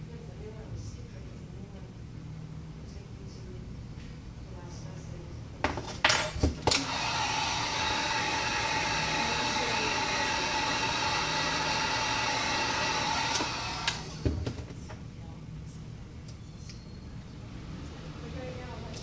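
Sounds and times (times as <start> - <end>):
heat gun blowing air: 6.7 - 14.2.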